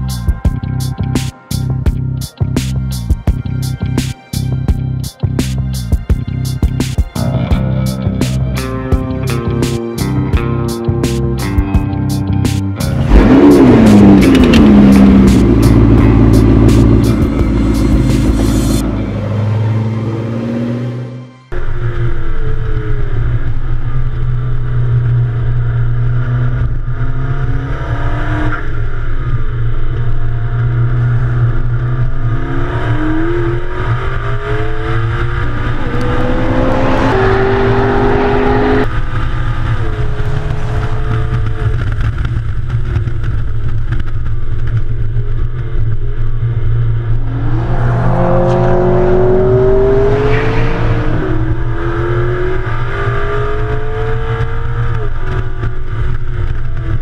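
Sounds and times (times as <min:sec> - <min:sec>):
sports car engine revving: 0:12.8 - 0:21.2, 0:21.8 - 0:57.0
low rumble: 0:12.9 - 0:20.5, 0:35.4 - 0:53.2.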